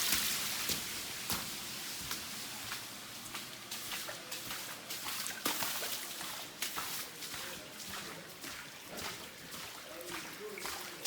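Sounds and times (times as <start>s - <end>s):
floodwater trickling and sloshing: 0.0s - 11.0s
small splashes: 2.0s - 11.0s.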